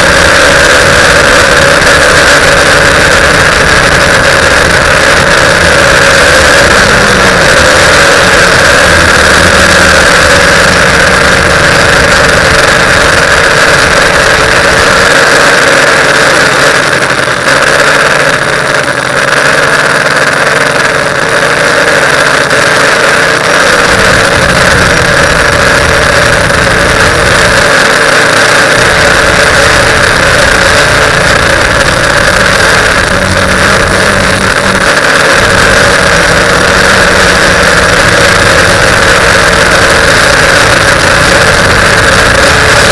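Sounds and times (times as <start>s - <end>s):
quadcopter propellers buzzing: 0.0s - 42.9s.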